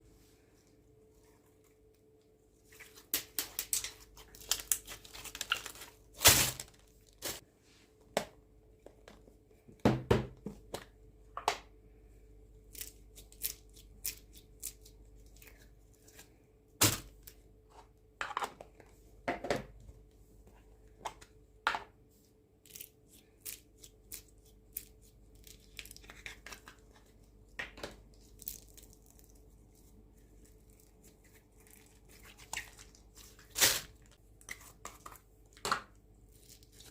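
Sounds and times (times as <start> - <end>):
faint steady hum: 0.0 - 36.9.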